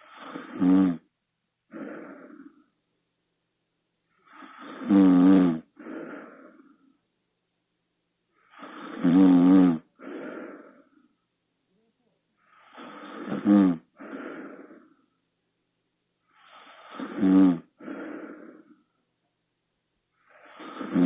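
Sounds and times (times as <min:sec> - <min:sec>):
person snoring: 0:00.0 - 0:01.1, 0:04.2 - 0:06.8, 0:08.4 - 0:10.9, 0:12.4 - 0:14.9, 0:16.3 - 0:18.8, 0:20.2 - 0:21.0
breathy out-breath: 0:01.7 - 0:02.7, 0:05.8 - 0:07.0, 0:10.0 - 0:11.2, 0:14.0 - 0:15.2, 0:17.8 - 0:19.1.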